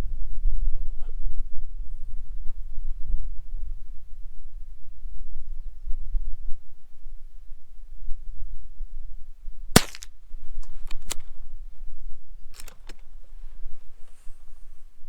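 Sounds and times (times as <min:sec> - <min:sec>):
rifle shot: 0:09.8 - 0:10.1.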